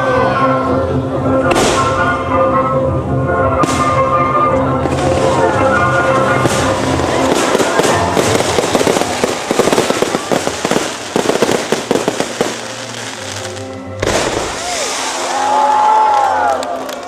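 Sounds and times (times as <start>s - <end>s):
music playing: 0.0s - 17.0s
fireworks crackling and popping: 4.8s - 17.0s.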